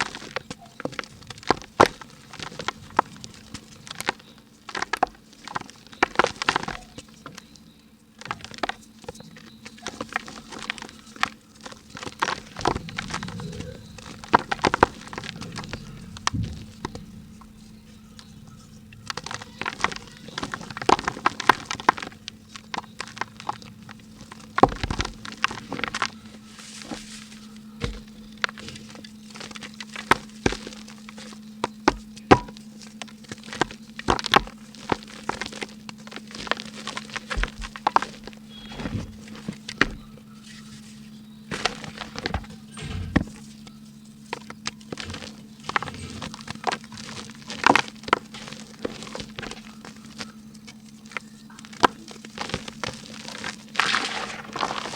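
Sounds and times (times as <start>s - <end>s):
faint steady hum: 0.0s - 54.9s
dry mud crumbling by hand: 8.2s - 54.9s
soft low thuds: 12.4s - 19.2s.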